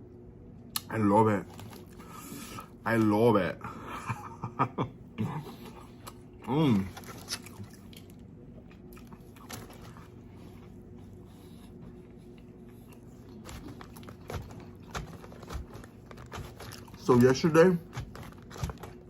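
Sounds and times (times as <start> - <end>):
chewing and mouth sounds: 5.3 - 19.0.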